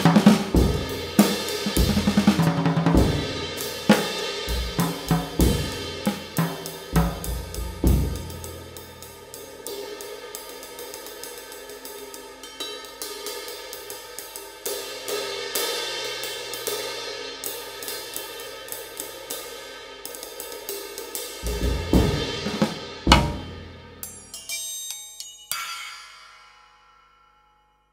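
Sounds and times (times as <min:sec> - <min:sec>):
drum kit hits: 0:00.0 - 0:09.0, 0:21.4 - 0:24.0
cymbal and hi-hat strikes: 0:00.0 - 0:24.6.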